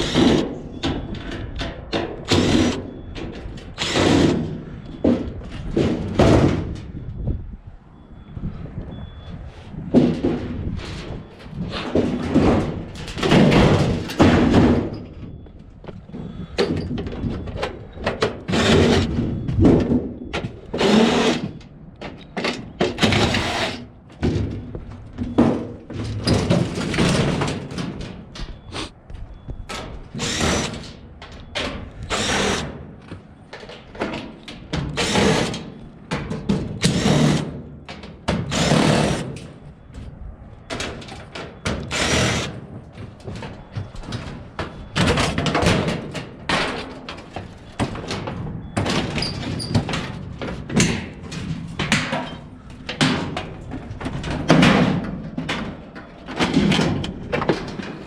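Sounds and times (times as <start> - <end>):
heavy objects thunking: 4.0 - 7.4, 9.7 - 20.7.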